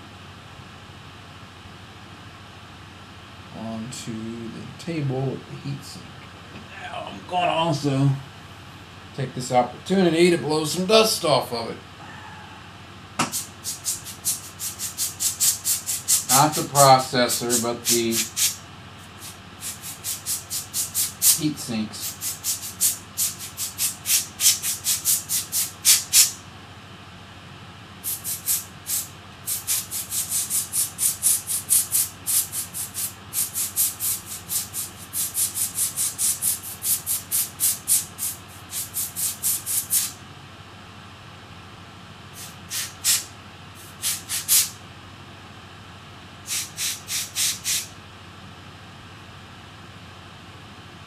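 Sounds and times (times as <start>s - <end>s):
air blown in short puffs: 13.2s - 16.4s, 17.4s - 21.4s, 22.0s - 26.4s, 28.0s - 40.2s, 42.3s - 44.8s, 46.4s - 47.9s.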